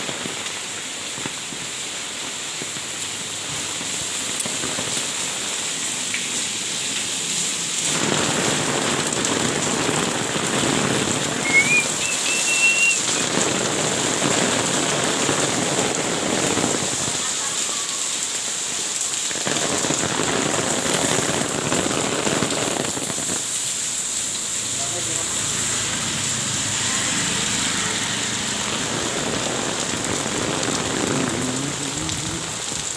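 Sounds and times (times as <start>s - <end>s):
rain pattering: 0.0s - 32.9s
high whistling tone: 11.4s - 13.3s.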